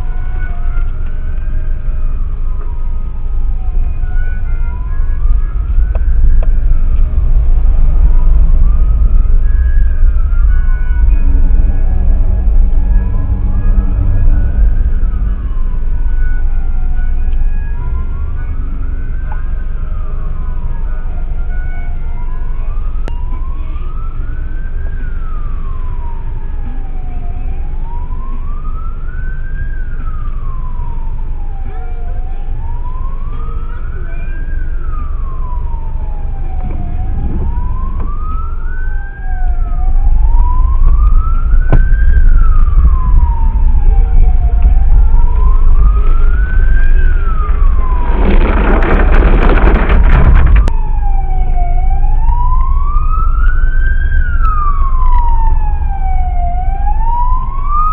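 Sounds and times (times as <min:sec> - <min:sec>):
emergency vehicle siren wailing: 0:00.0 - 0:57.9
traffic rumble: 0:00.0 - 0:57.9
loud rush of noise: 0:46.2 - 0:50.7.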